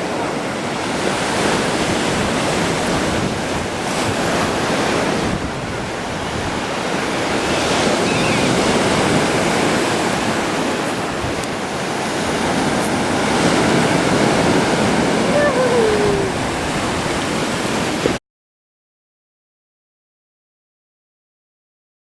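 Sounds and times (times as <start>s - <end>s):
surf breaking on shore: 0.0s - 18.2s
wind buffeting microphone: 0.8s - 18.2s.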